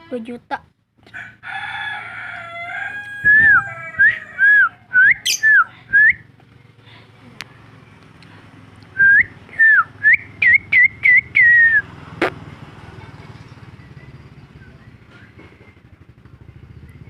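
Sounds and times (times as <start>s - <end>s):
whistled notes: 9.0s - 11.9s.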